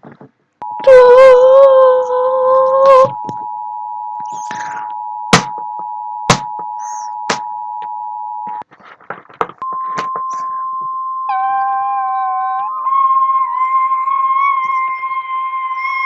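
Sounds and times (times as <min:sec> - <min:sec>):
steady warning alarm tone: 0:03.1 - 0:08.6
two-tone attention signal: 0:09.6 - 0:11.8.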